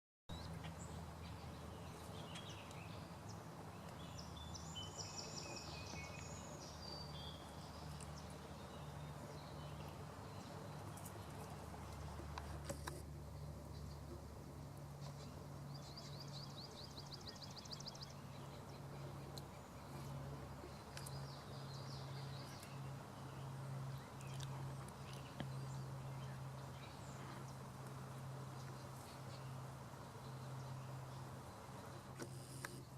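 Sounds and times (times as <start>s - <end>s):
low background hum: 0.3s - 32.9s.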